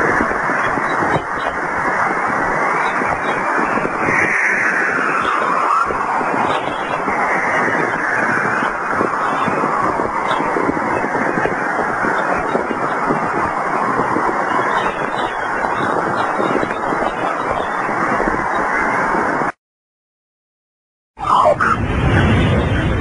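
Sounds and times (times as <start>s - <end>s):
dense rushing noise: 0.0s - 19.6s, 21.2s - 23.0s
whooshes falling in pitch: 21.2s - 23.0s.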